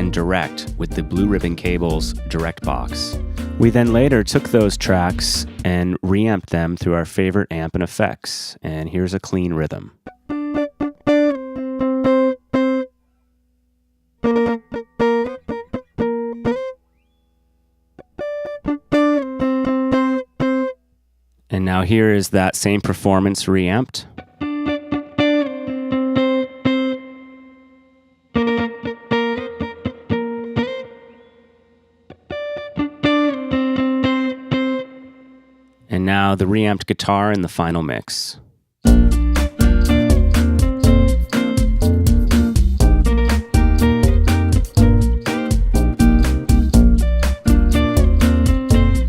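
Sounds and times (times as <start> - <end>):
clean electric guitar chords: 0.0 - 5.7, 10.0 - 12.9, 14.2 - 16.8, 18.0 - 20.8, 24.2 - 35.8, 38.8 - 49.0.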